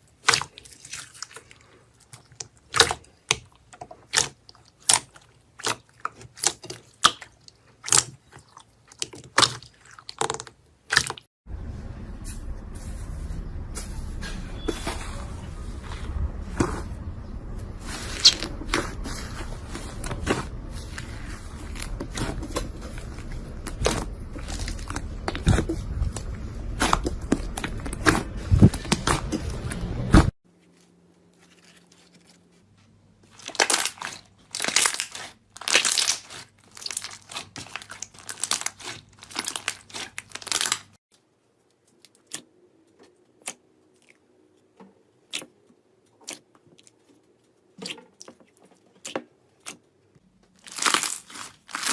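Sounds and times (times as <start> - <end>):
slime crackling and popping: 33.4 - 41.0, 50.6 - 51.9.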